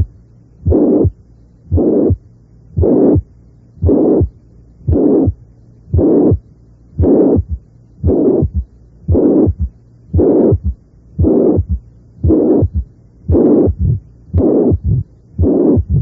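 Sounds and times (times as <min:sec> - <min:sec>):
heart murmur blowing: 0:00.6 - 0:02.2, 0:03.8 - 0:06.4, 0:07.0 - 0:16.0
low heart sound rumble: 0:07.0 - 0:16.0.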